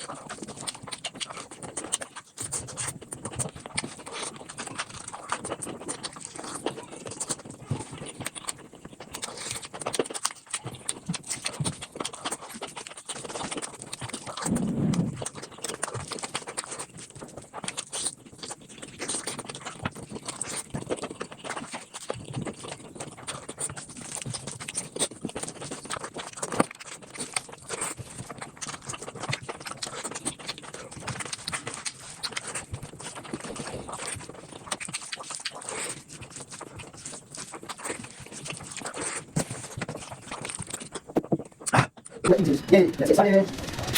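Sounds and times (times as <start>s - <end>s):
rapid chewing clicks and crunches: 0.0s - 43.9s
short low-pitched sound: 14.5s - 15.2s, 42.3s - 43.9s.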